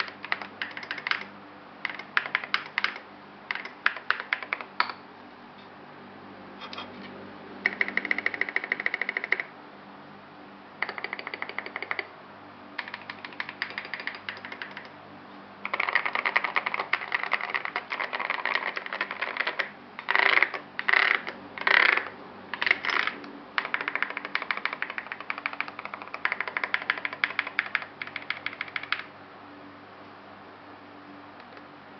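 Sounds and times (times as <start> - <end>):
mechanical keyboard typing: 0.0 - 4.8, 7.6 - 9.5, 10.8 - 12.1, 12.8 - 14.9, 15.6 - 29.1
faint steady hum: 0.0 - 31.9.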